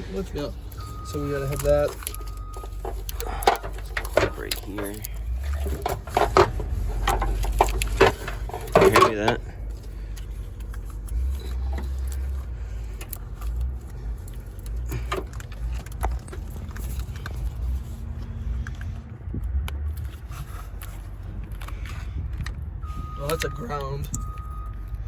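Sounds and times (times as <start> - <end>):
steady low rumble: 0.0 - 25.0
tools clicking on wiring: 0.7 - 17.7.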